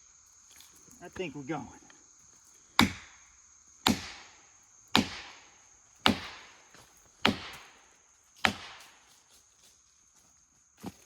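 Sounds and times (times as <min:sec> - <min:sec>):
wedge hammer blows cracking: 0:02.8 - 0:03.2, 0:03.8 - 0:06.6, 0:07.2 - 0:07.8, 0:08.4 - 0:09.0.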